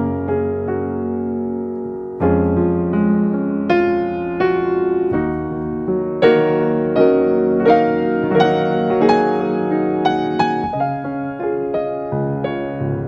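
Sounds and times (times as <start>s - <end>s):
slow piano music: 0.0s - 13.0s.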